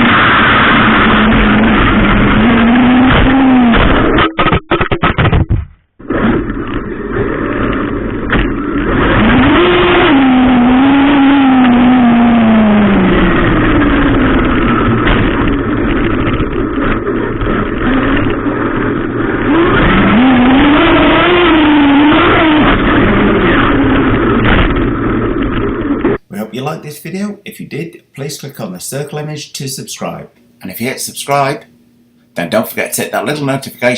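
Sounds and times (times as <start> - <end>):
electric motor whining: 0.0 - 5.4, 6.0 - 26.2.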